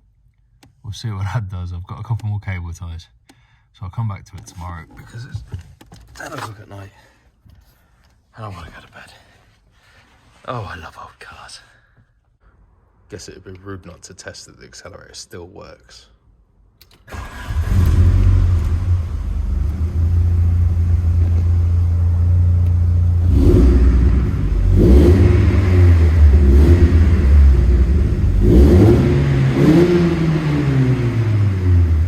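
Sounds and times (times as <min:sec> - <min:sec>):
car engine starting and revving: 0:17.1 - 0:32.0.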